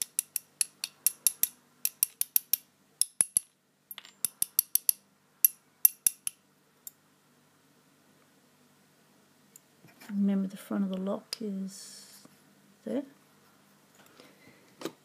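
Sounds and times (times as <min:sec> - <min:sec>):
metallic clicks of lock parts: 0:00.0 - 0:07.0.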